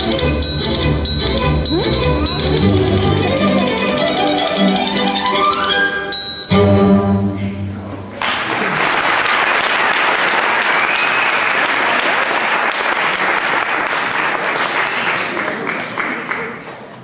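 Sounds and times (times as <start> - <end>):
audience applause: 8.2 - 17.0.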